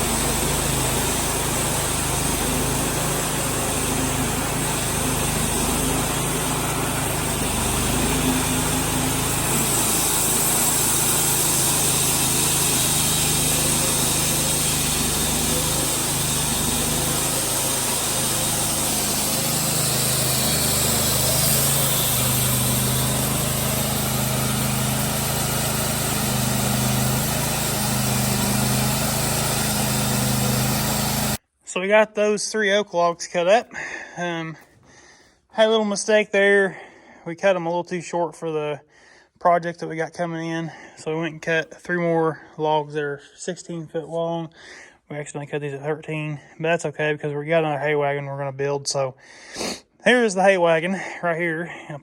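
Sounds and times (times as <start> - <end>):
small gasoline engine running: 0.0 - 31.4.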